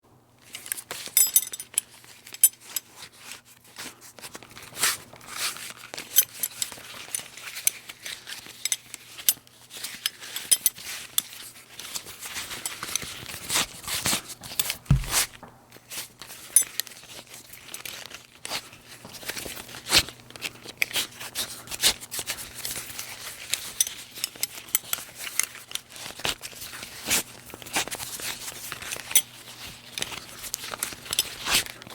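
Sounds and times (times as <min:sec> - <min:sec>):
metal buckle clicking: 0:14.6 - 0:15.5
dull thump: 0:14.9 - 0:15.7.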